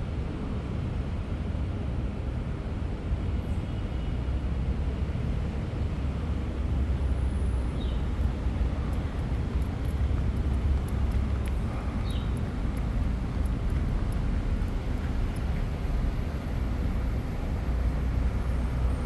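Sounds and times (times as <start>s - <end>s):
steady low rumble: 6.0s - 19.0s.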